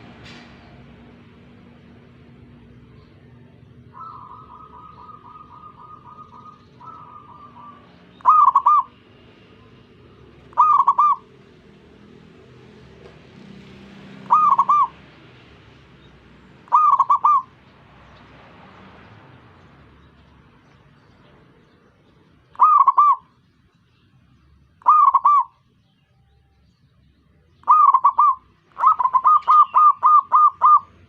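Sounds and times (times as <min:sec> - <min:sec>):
soft rapid bird trill: 0:03.0 - 0:11.4, 0:14.3 - 0:15.0, 0:16.7 - 0:17.8, 0:22.1 - 0:31.0
doves cooing: 0:03.2 - 0:09.0, 0:09.6 - 0:11.6, 0:14.1 - 0:15.1, 0:16.6 - 0:17.6, 0:22.5 - 0:23.3, 0:24.8 - 0:25.6, 0:27.6 - 0:31.0.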